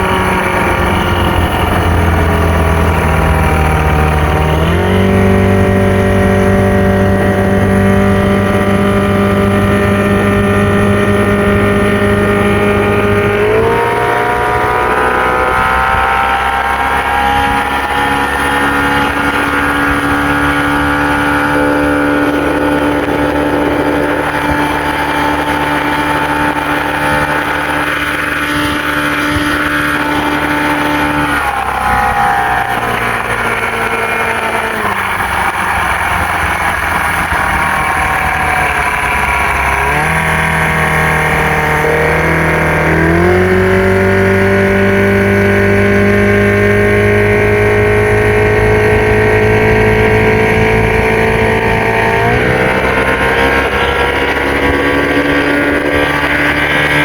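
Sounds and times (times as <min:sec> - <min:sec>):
boat motor running: 0:00.0 - 0:57.0.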